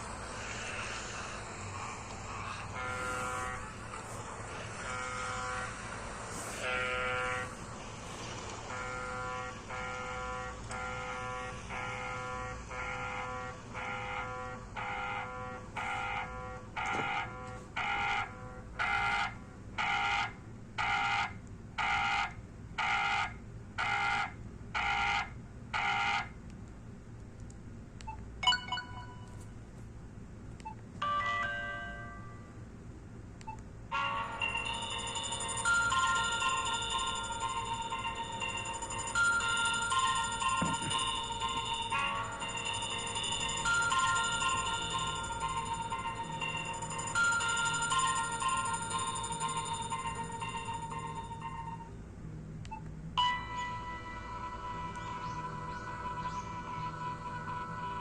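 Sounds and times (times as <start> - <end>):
electronic phone ringtone: 2.3 - 7.7, 8.7 - 24.2, 28.4 - 29.4, 31.0 - 32.3, 33.9 - 52.0, 53.2 - 58.0
short clicks and beeps: 28.0 - 29.5, 33.4 - 33.7, 52.6 - 53.0.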